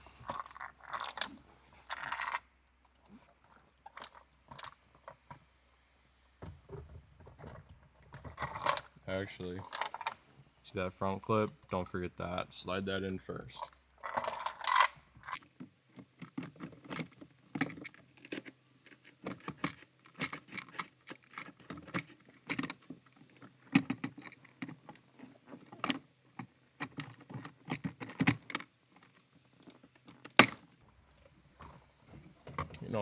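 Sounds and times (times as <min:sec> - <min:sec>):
plastic trim clicks and rattles: 0:16.0 - 0:30.7.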